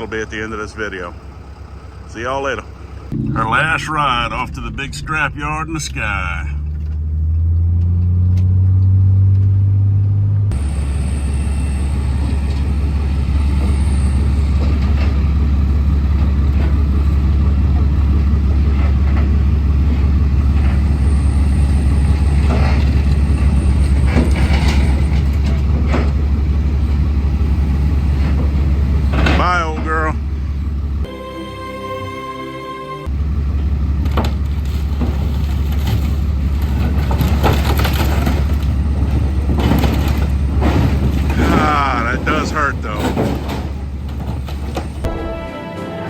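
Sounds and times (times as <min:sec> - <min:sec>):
vehicle engine drone: 0:00.0 - 0:45.3
road noise: 0:00.0 - 0:46.0
knocks and rattles: 0:23.8 - 0:26.3, 0:34.0 - 0:45.1.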